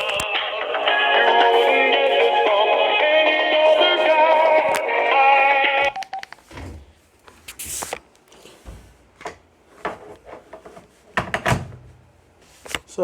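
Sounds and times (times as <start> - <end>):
music over a telephone line: 0.0 - 6.4.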